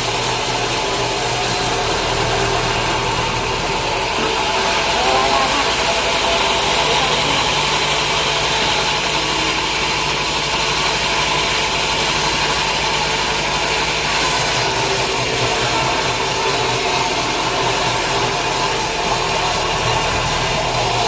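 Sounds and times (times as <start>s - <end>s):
sawmill machinery drone: 0.0s - 21.0s.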